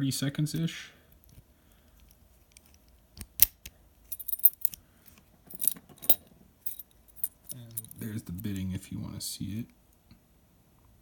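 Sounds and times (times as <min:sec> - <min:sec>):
padlock metallic clicks and clinks: 0:02.0 - 0:04.8, 0:05.5 - 0:08.6.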